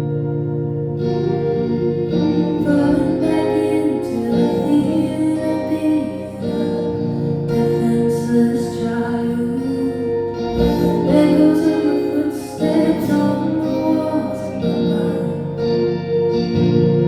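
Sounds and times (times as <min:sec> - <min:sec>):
guitar accompaniment: 0:00.0 - 0:17.0
woman singing: 0:02.0 - 0:16.3.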